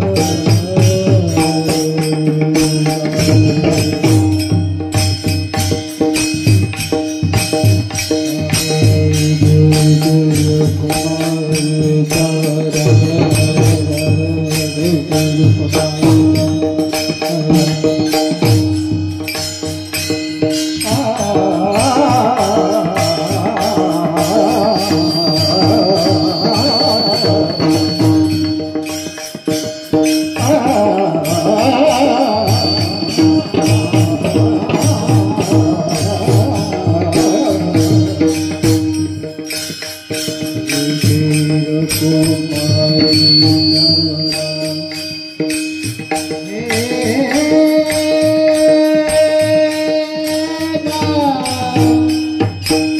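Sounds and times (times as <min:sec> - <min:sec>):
rhythmic percussion with jingling: 0:00.0 - 0:52.9
wavering melody line: 0:12.2 - 0:52.9.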